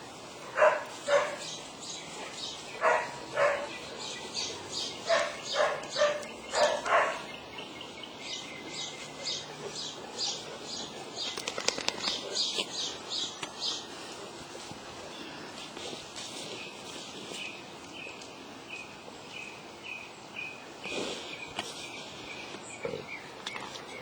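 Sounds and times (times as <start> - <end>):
dogs barking: 0.4 - 7.5
sharp clicks clattering: 11.3 - 12.2.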